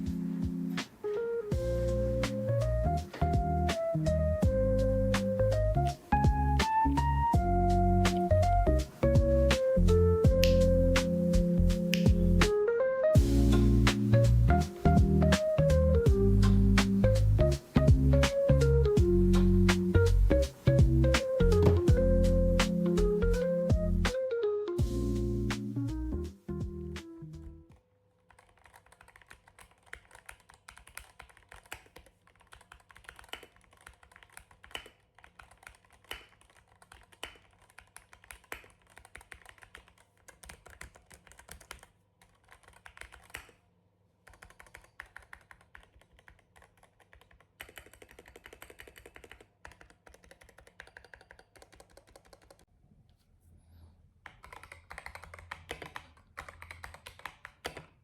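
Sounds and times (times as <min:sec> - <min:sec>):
mechanical keyboard typing: 0:28.3 - 0:43.6, 0:44.2 - 0:52.7, 0:54.2 - 0:58.0.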